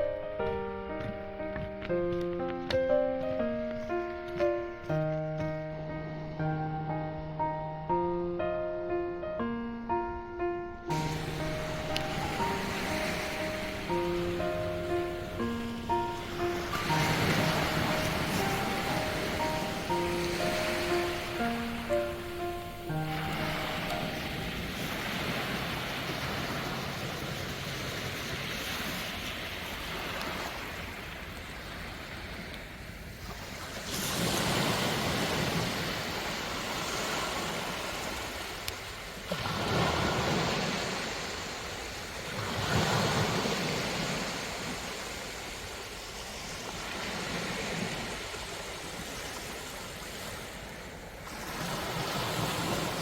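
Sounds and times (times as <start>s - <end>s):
sea waves breaking on beach: 10.9s - 53.0s.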